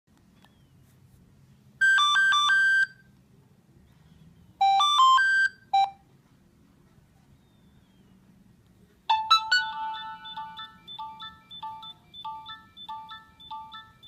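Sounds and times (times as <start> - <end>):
polyphonic phone ringtone: 1.8 - 3.0, 4.6 - 6.0, 9.1 - 14.0.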